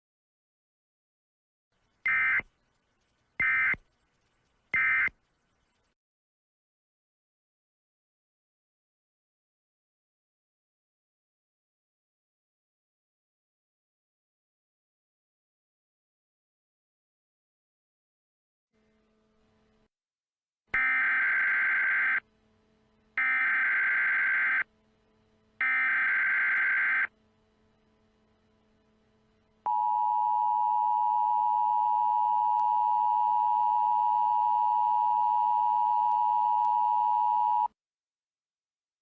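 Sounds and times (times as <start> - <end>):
long steady attention tone: 20.8 - 37.8.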